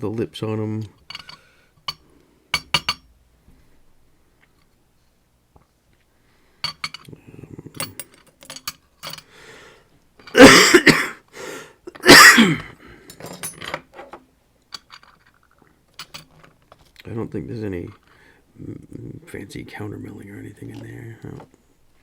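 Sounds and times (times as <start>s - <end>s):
metal lock parts clinking: 1.0s - 2.0s, 7.7s - 9.3s, 13.1s - 17.0s.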